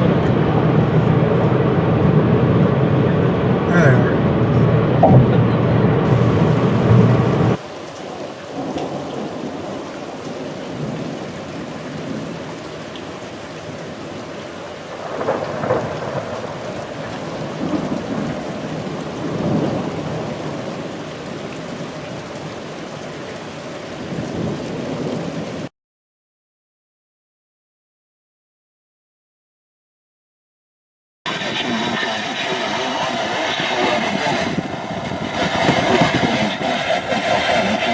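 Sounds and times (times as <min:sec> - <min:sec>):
loud low sound: 0:00.0 - 0:07.6
thunder rumbles: 0:00.0 - 0:25.7, 0:31.4 - 0:37.9
steady rain: 0:06.0 - 0:25.7, 0:31.3 - 0:37.9.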